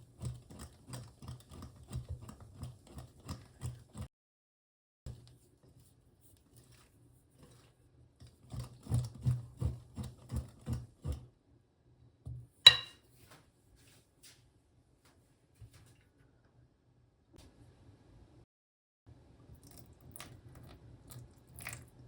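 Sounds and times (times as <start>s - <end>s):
dull knocks of kitchenware: 12.3s - 13.0s
sharp ringing clink: 12.7s - 13.0s.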